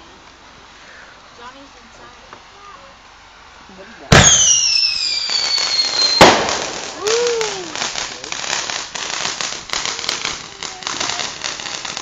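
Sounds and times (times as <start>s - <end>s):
firework crackling: 0.0s - 12.0s
firework whistle: 4.1s - 8.0s
firework bang: 4.1s - 12.0s.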